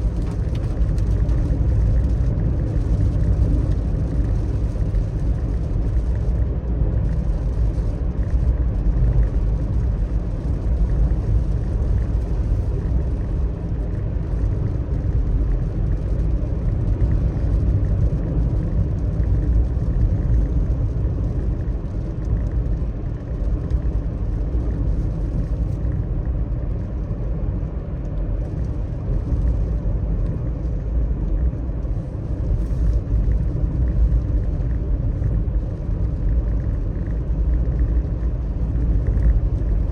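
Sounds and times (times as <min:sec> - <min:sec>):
car tyres rumbling on wet road: 0:00.0 - 0:39.9.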